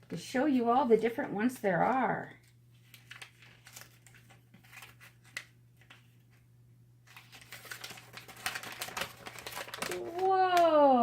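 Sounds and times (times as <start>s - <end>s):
low electrical hum: 0.0s - 11.0s
paper leaflet rustling: 2.4s - 6.4s, 7.0s - 10.8s.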